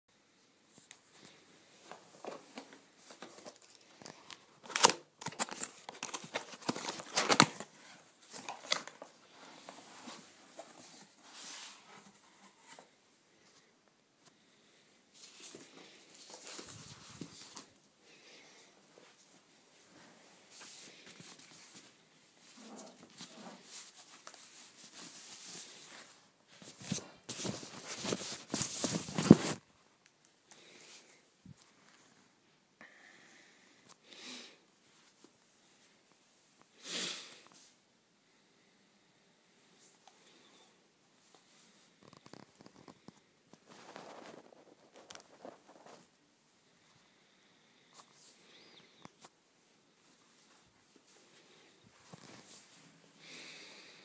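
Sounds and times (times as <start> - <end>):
packaging rustling and crinkling: 1.8 - 12.9, 22.5 - 29.7.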